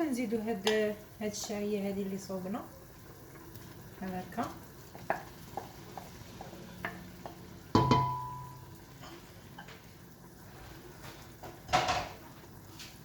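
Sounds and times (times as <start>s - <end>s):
faint sizzling: 0.0s - 13.0s
stirring in a pot: 0.8s - 8.2s
metallic clang: 7.8s - 8.6s.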